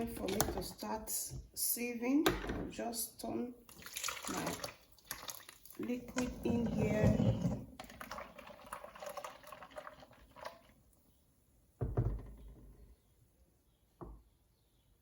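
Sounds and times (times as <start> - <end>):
liquid pouring and splashing: 3.7 - 11.0.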